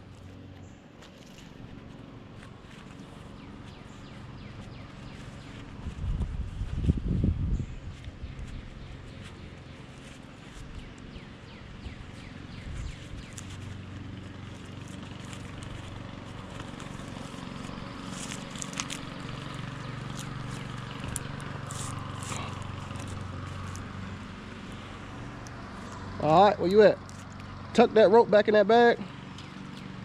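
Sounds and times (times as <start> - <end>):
low engine hum: 0.0 - 30.0
sharp clicks and crackles: 13.0 - 23.9.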